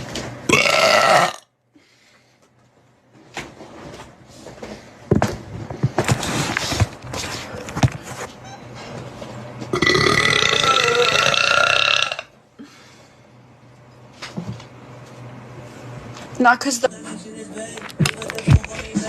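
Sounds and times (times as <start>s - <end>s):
person burping loudly: 0.5s - 1.5s, 9.8s - 12.3s.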